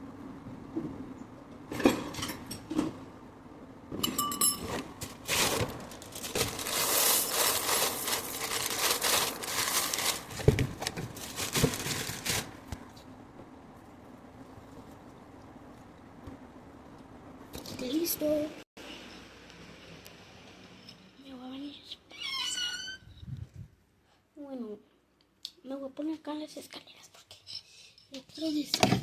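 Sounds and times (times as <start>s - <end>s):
bowl clink: 4.0s - 4.8s
cereal poured into a bowl: 6.3s - 10.2s.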